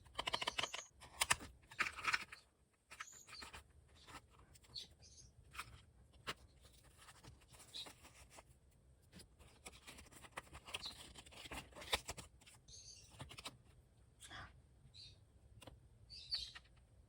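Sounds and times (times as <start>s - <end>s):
soft rustling and scratching: 1.0s - 13.8s.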